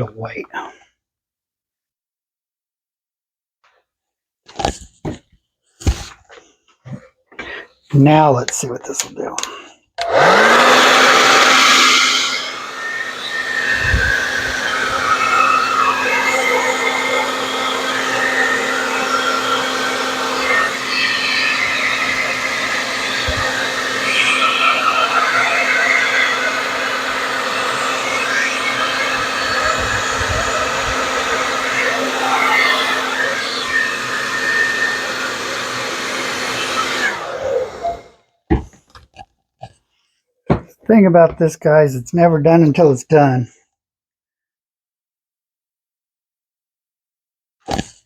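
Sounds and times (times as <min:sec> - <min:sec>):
hair dryer blowing air: 0:10.0 - 0:38.2.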